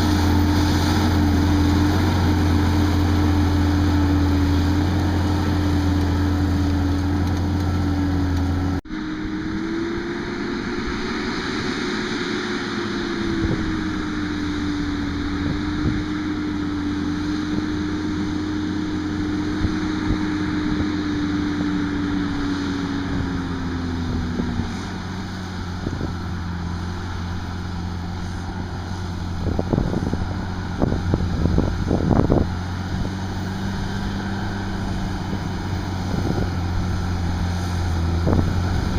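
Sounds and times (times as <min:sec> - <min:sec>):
tractor engine droning: 0:00.0 - 0:38.9.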